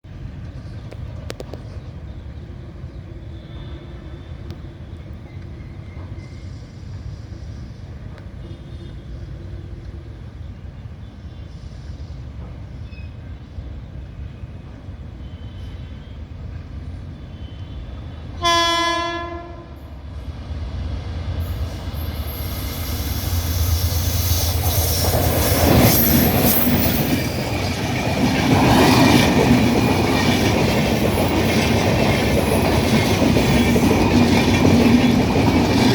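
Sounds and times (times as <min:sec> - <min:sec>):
train rumbling and clattering: 0:00.0 - 0:35.9
train horn blast: 0:18.4 - 0:20.0.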